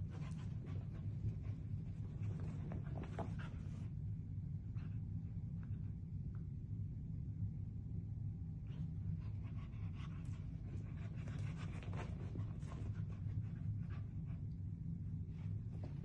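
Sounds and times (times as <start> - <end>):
dogs panting and scuffling: 0.0 - 4.0, 8.8 - 14.6
steady low hum: 0.0 - 16.0.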